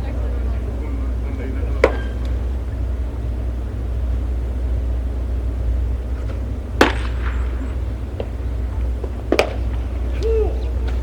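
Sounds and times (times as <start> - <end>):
steady low rumble: 0.0 - 11.0
baseballs smacking into leather mitt: 9.0 - 11.0.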